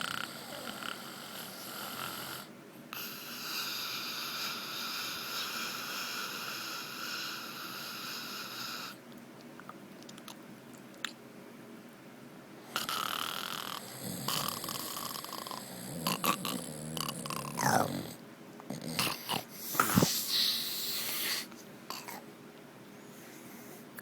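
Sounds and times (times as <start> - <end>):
man snoring wheezing: 0.0 - 9.0, 12.7 - 20.1.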